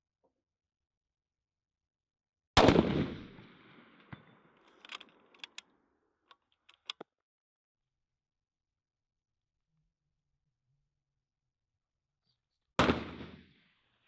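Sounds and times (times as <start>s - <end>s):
rifle shot echoing: 2.6s - 4.3s, 12.8s - 13.4s
rifle bolt clicks: 4.7s - 5.7s, 6.6s - 7.1s.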